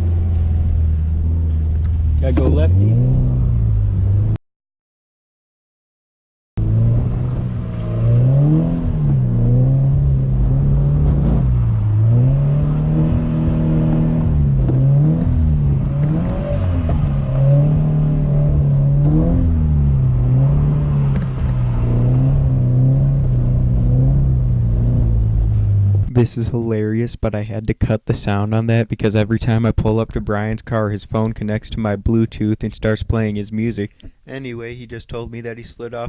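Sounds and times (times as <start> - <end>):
car engine revving: 0.0 - 4.4, 6.6 - 26.2.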